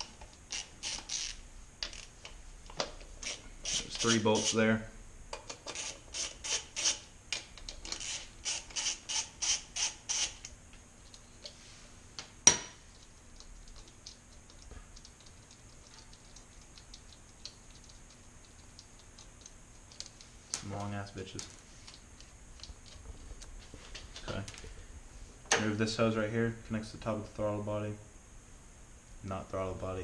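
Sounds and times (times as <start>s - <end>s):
hand ratchet clicking: 0.0s - 2.1s, 3.2s - 4.6s, 5.3s - 11.2s.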